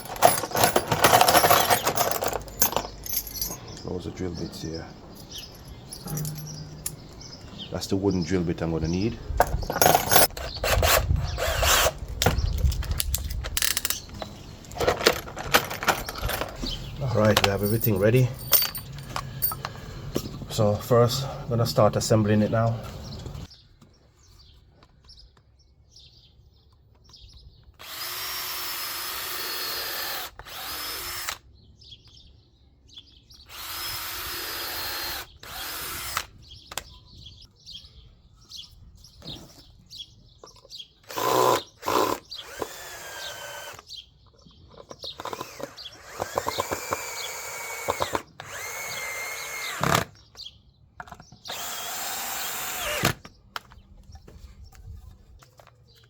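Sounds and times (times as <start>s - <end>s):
cordless drill drilling into wood: 10.4s - 12.0s, 27.8s - 31.4s, 33.5s - 36.3s, 41.1s - 43.8s, 45.2s - 50.1s, 51.5s - 53.2s.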